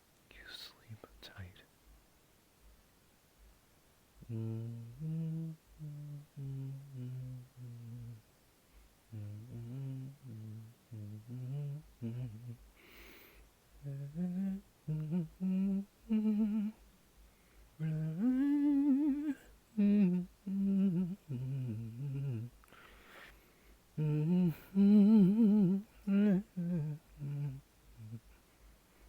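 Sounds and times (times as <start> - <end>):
person humming: 4.2 - 8.2, 9.1 - 16.8, 17.8 - 23.3, 24.0 - 28.4
breath: 12.8 - 13.5, 17.2 - 17.7, 22.6 - 23.8.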